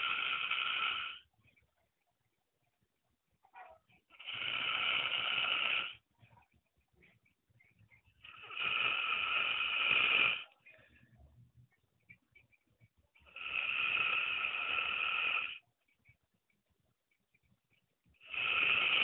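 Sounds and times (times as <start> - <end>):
man snoring: 0.0 - 1.2, 4.2 - 6.0, 8.2 - 10.5, 13.2 - 15.6, 18.2 - 19.0.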